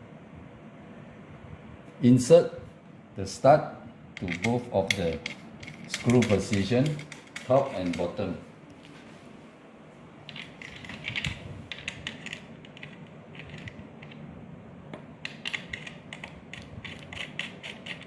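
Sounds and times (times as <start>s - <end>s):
small metallic clicks: 4.2s - 8.1s.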